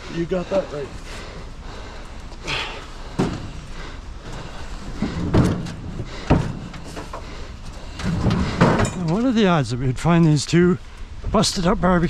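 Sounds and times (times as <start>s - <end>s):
steady background noise: 0.0s - 12.0s
heavy knocks and thuds: 3.1s - 3.6s, 4.9s - 7.2s, 8.0s - 9.0s.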